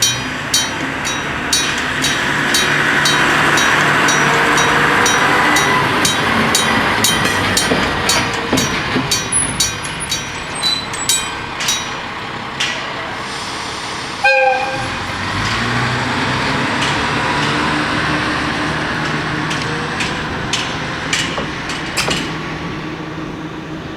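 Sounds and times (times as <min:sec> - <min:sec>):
locomotive droning: 0:00.0 - 0:23.9
train wheels clacking on rail joints: 0:00.0 - 0:23.9
train horn blast: 0:14.2 - 0:15.9.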